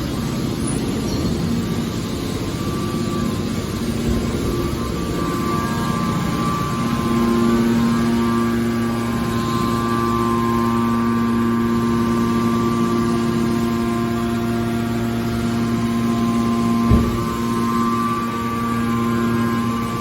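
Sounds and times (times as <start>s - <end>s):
hydraulic power unit humming: 0.0s - 20.0s
short knock: 16.9s - 17.4s.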